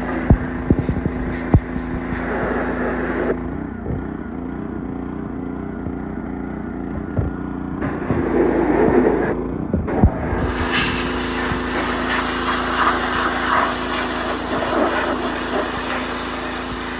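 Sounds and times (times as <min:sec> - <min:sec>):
pressure washer engine running: 0:00.0 - 0:16.9
pressure washer spray hiss: 0:10.3 - 0:16.9.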